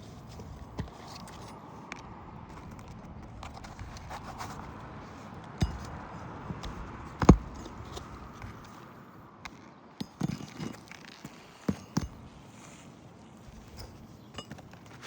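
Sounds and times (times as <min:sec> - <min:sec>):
hand tool taps and scrapes: 0:05.5 - 0:08.8.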